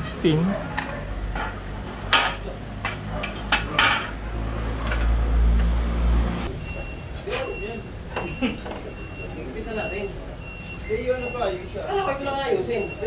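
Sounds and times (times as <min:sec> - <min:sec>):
metal tools clinking: 0:08.2 - 0:09.0.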